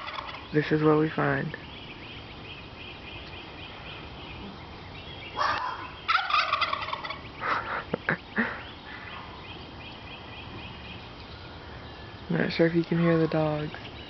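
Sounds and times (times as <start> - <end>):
turkey gobbling: 0.0 - 0.5, 5.2 - 9.4.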